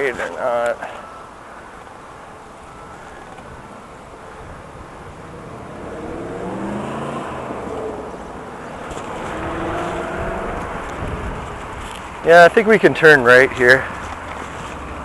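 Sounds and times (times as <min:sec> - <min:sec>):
car road noise: 0:00.0 - 0:15.0
car engine accelerating: 0:05.2 - 0:11.7.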